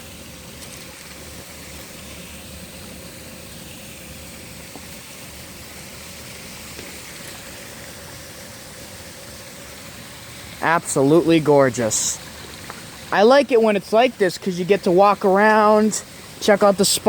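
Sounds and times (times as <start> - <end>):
faint steady hum: 0.0 - 17.0
waterfall rushing: 10.5 - 17.0.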